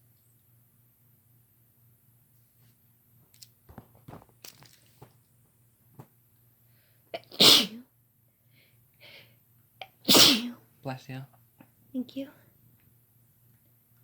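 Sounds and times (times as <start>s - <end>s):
faint clicks and rustles: 2.3s - 6.2s
woman sneezing: 7.2s - 7.8s, 10.1s - 10.6s.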